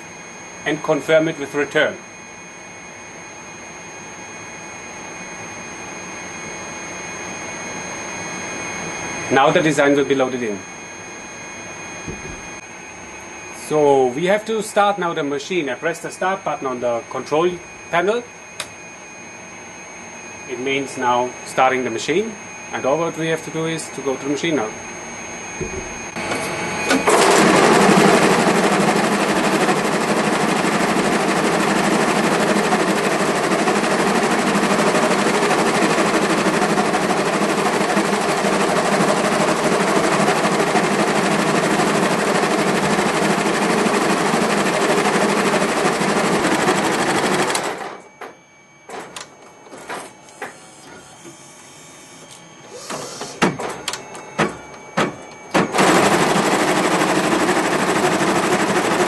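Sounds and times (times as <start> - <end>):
scattered clicks and knocks: 12.1 - 12.5, 53.4 - 56.0
embroidery machine stitching: 26.3 - 48.0, 55.5 - 59.0.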